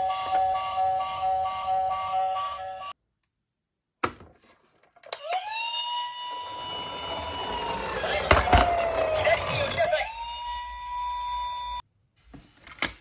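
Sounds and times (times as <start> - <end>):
toy police car siren: 0.0 - 3.0, 5.1 - 11.8.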